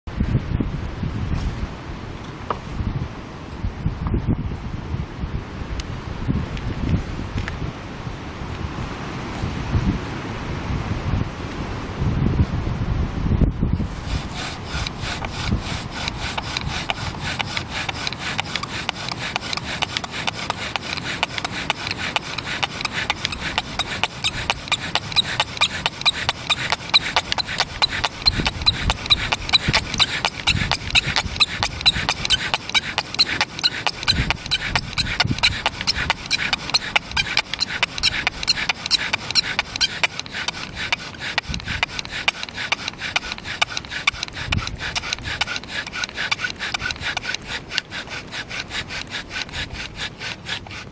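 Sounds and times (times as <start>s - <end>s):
bow drill grinding with squeaks: 13.8s - 50.9s.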